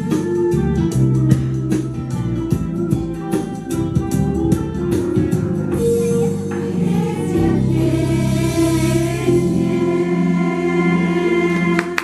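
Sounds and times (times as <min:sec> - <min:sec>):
choir singing sustained notes: 0:06.2 - 0:12.0.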